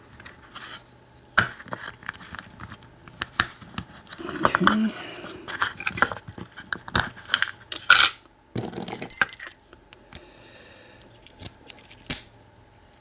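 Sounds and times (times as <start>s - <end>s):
metal lock parts clicking: 11.2s - 12.3s.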